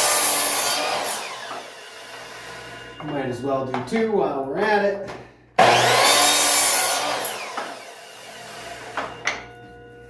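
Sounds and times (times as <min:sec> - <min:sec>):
saw blade winding down: 0:00.0 - 0:03.0, 0:05.6 - 0:09.2
power saw cutting wood: 0:00.0 - 0:03.1, 0:05.6 - 0:09.4.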